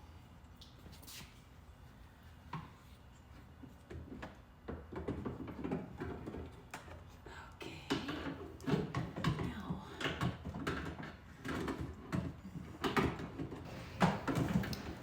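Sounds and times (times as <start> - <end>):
clattering and rustling: 13.7 - 15.0.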